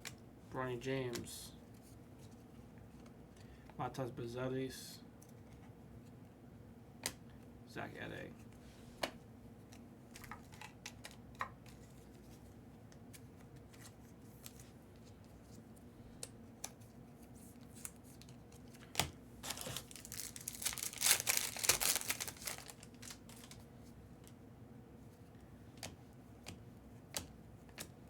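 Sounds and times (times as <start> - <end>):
plastic wrapper crinkling and tearing: 17.7 - 23.6
trading cards clicking and tapping: 25.8 - 28.0.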